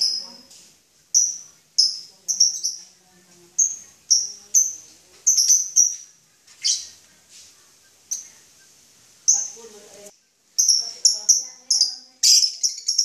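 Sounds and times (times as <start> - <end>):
birds chirping shrilly: 3.6 - 6.0, 6.6 - 7.0, 10.6 - 13.0.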